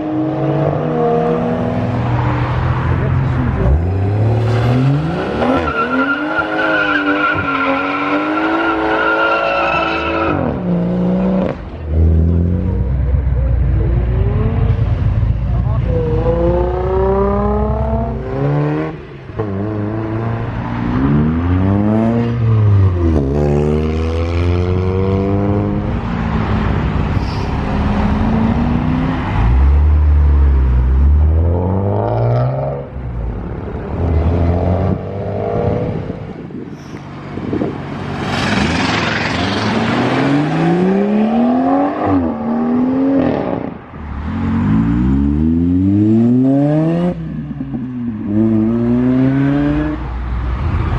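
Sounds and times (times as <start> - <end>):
sports cars accelerating: 0.0 - 36.6, 37.2 - 50.9.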